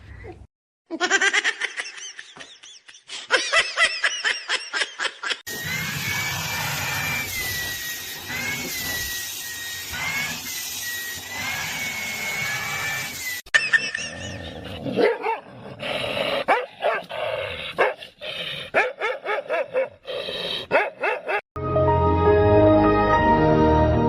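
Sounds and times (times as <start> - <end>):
small motor whirring: 5.5 - 13.5
high-pitched squeaks: 5.5 - 14.3.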